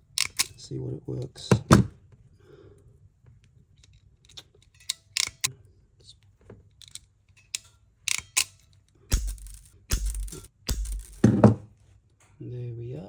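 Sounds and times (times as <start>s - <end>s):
ratcheting crimper clicking: 0.1s - 0.6s, 4.3s - 5.5s, 6.8s - 11.2s
loud knock: 9.1s - 11.6s.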